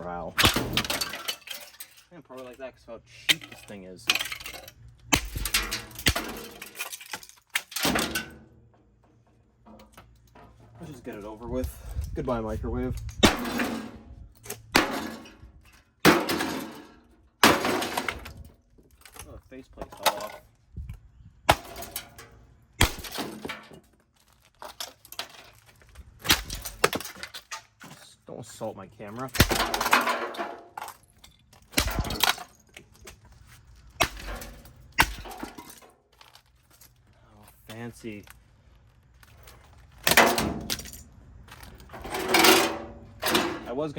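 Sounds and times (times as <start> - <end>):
parts rattling: 0.0 - 28.2, 29.0 - 43.9.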